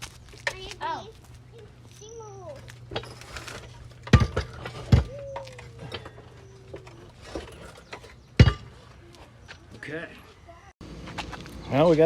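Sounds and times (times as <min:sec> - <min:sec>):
metal knocks and clanks: 0:02.9 - 0:08.9.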